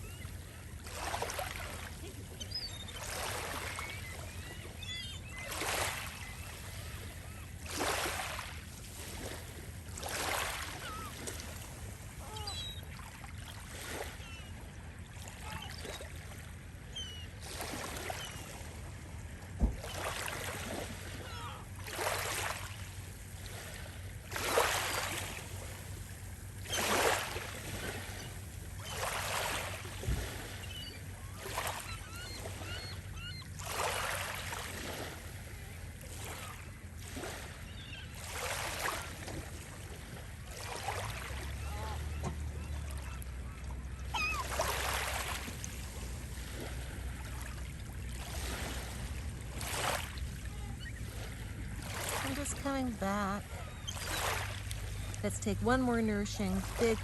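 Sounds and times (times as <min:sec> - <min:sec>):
small waves breaking: 0:00.0 - 0:57.0
seagull calls: 0:02.3 - 0:08.0, 0:10.7 - 0:11.2, 0:12.1 - 0:13.0, 0:15.3 - 0:16.2, 0:16.8 - 0:18.5, 0:21.1 - 0:21.7, 0:26.6 - 0:34.1, 0:41.4 - 0:45.6, 0:49.8 - 0:57.0.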